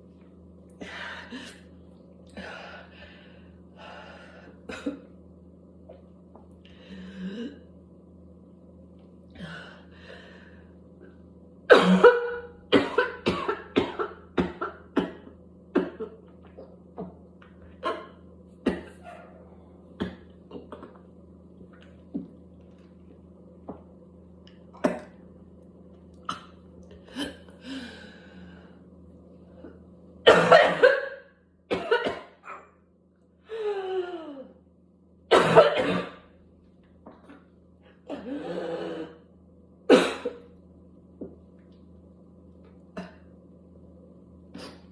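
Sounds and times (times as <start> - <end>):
person coughing harshly: 11.7 - 16.2, 17.8 - 19.3, 20.0 - 20.9, 24.8 - 25.1, 30.3 - 32.6, 35.3 - 36.2, 39.9 - 40.5.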